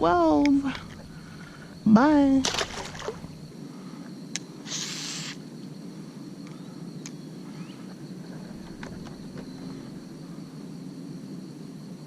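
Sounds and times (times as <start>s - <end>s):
faint high insect drone: 0.0s - 12.0s
short hiss: 4.6s - 5.4s.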